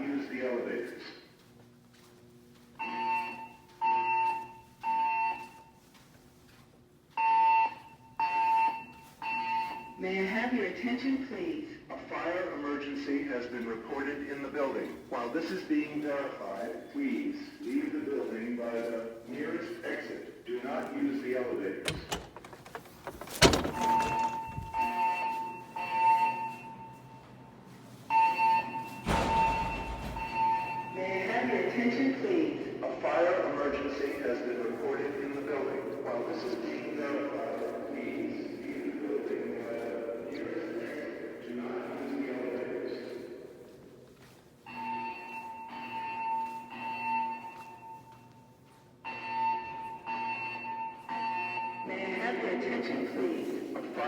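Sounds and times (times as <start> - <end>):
fire alarm evacuation tones: 0.0 - 54.0
fire alarm pulsing tone: 2.8 - 5.9, 7.1 - 10.3, 21.9 - 31.8, 44.6 - 53.6.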